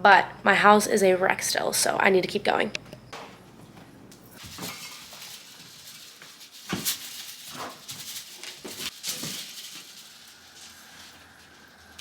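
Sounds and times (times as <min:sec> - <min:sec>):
objects rustling: 0:03.2 - 0:12.0.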